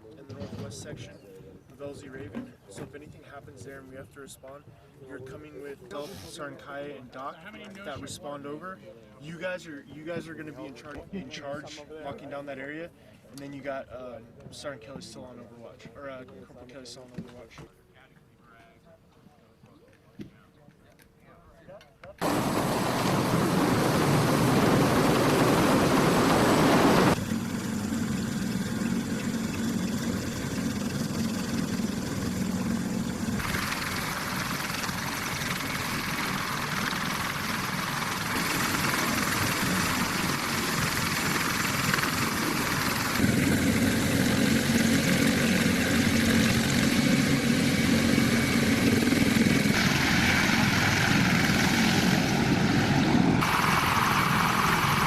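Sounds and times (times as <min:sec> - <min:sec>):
helicopter rotors and turbines: 0:22.2 - 0:55.0.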